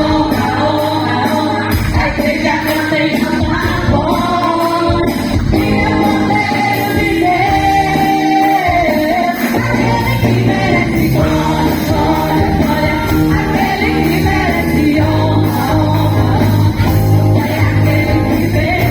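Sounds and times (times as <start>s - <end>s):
instrumental backing with beat: 0.0s - 18.9s
women's choir singing gospel: 0.0s - 18.9s.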